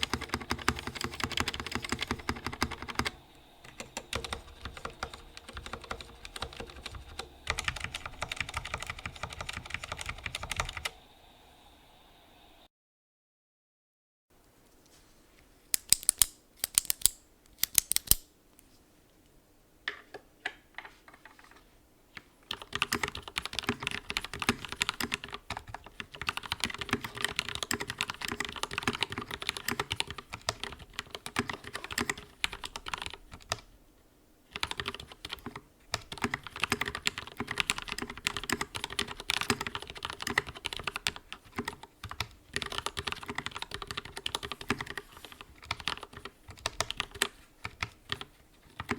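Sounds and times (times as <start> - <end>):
mechanical keyboard typing: 0.0 - 11.0, 15.8 - 18.2, 22.5 - 33.7, 34.5 - 48.9
sharp key presses: 15.8 - 18.3.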